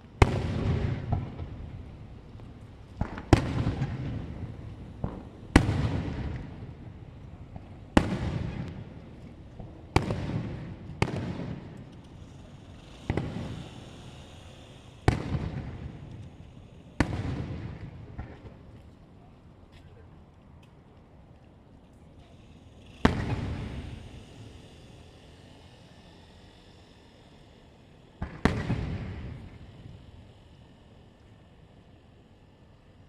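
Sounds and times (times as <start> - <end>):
firework shells bursting: 0.2 - 18.8, 22.2 - 24.8, 28.2 - 29.8.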